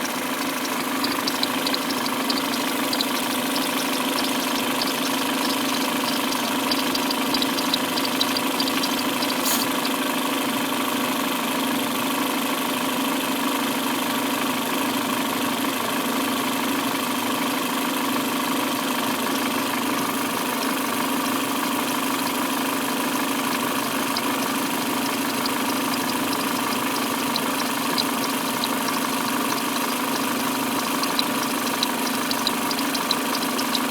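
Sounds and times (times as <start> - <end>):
high chirping squeak: 0.0 - 10.0, 23.3 - 33.9
car engine idling: 0.0 - 10.1, 18.8 - 33.9.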